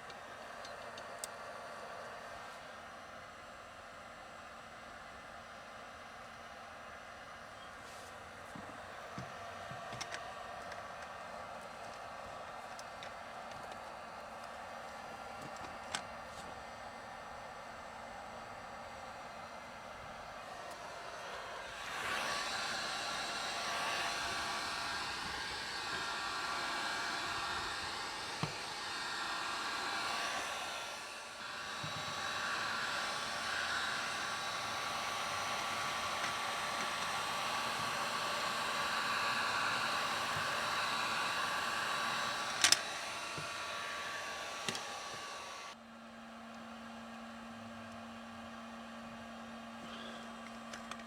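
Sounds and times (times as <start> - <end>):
machine motor whir: 20.4 - 45.8.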